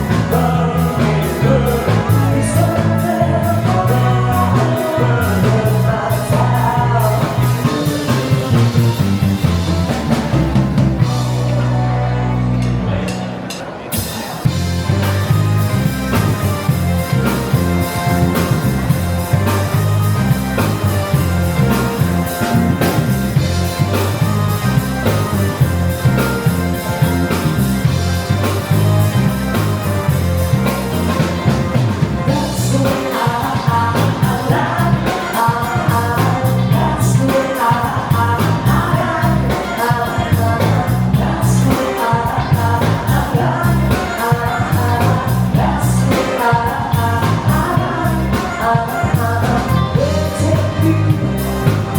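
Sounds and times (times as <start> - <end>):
upbeat rock song with singer: 0.0 - 51.9.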